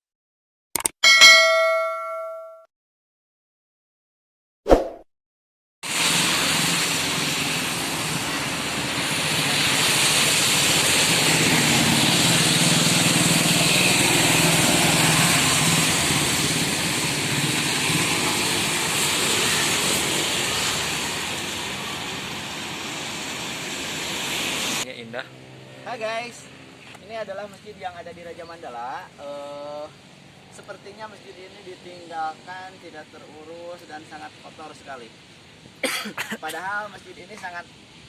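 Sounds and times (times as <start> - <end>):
sharp click: 0.8 - 1.0
motor vehicles running: 6.0 - 28.2.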